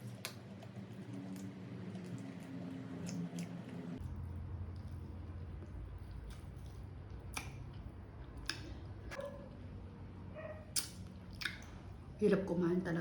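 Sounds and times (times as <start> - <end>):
mouth chewing food: 0.0 - 9.3, 10.7 - 11.8
low steady hum: 0.0 - 13.0
sharp wet clicks: 10.8 - 11.8.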